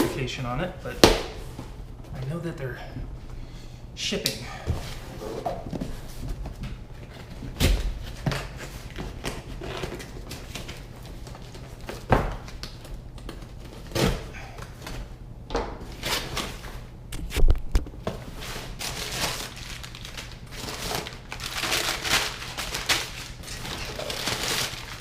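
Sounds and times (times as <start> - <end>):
crumpled newspaper rustling: 18.4 - 25.0.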